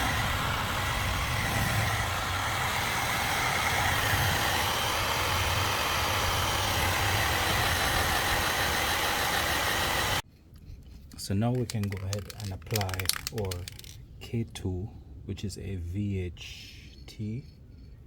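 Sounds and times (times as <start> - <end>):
hot-air blower running: 0.0 - 10.2.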